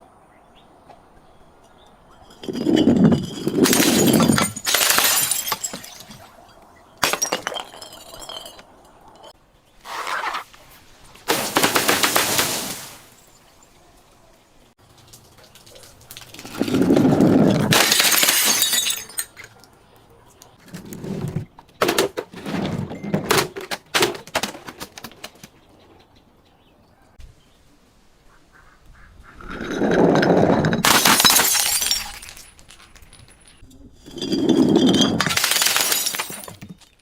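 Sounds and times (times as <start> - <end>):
glass breaking and crunching: 2.2 - 9.3, 17.7 - 19.5, 30.7 - 37.0.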